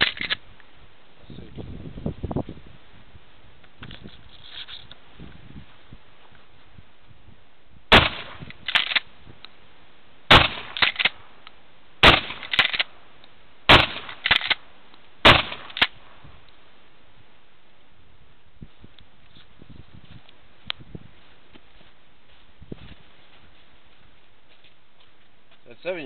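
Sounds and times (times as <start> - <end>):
shotgun shots: 7.9 - 9.0, 10.3 - 11.3, 12.0 - 12.9, 13.7 - 14.6, 15.2 - 16.1
shotgun slide metallic clacks: 8.6 - 9.1, 10.7 - 11.2, 12.3 - 12.9, 14.1 - 14.6.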